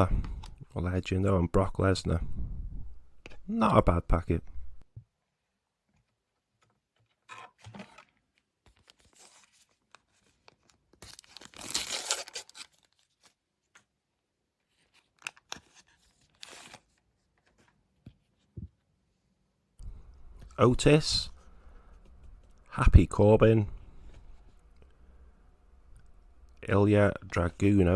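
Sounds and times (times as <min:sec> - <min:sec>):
wrapper tearing and crinkling: 0:10.5 - 0:13.4.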